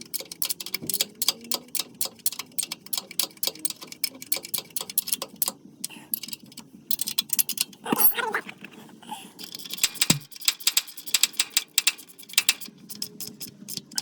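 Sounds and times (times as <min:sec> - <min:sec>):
ratchet wrench clicking: 0:00.0 - 0:07.7, 0:09.4 - 0:14.0.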